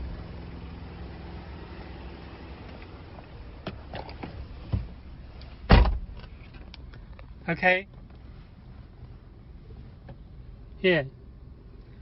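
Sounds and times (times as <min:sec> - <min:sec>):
car engine idling: 0:00.0 - 0:12.0
heavy thump: 0:05.7 - 0:06.2.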